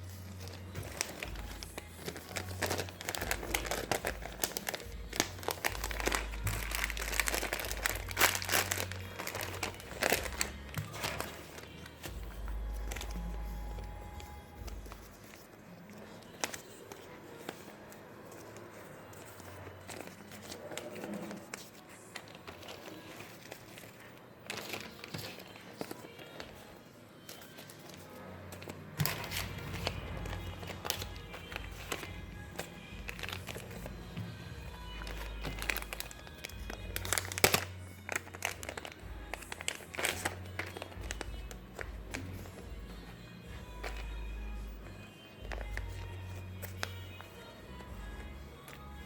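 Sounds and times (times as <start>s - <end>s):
background music: 0.0s - 49.0s
packaging crinkling: 0.3s - 15.4s, 18.6s - 42.7s.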